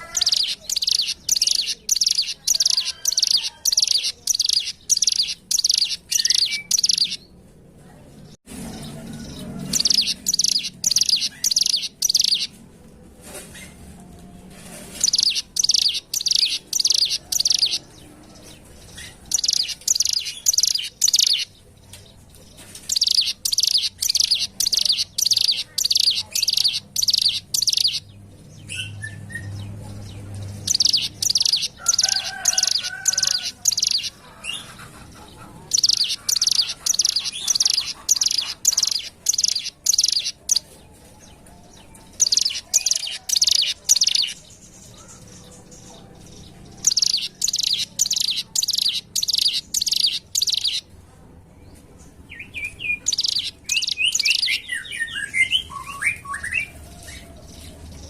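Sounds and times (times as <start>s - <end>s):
bird singing rapid high chirps: 0.0s - 7.3s, 8.8s - 12.6s, 15.0s - 18.0s, 18.8s - 21.6s, 22.9s - 34.6s, 35.7s - 40.7s, 42.1s - 45.6s, 46.7s - 50.9s, 52.3s - 56.7s.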